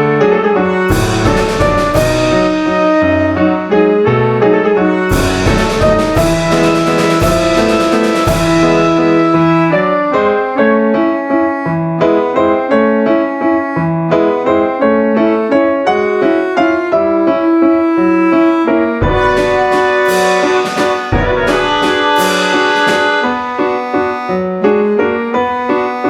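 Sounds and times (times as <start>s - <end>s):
piano melody: 0.0s - 26.0s.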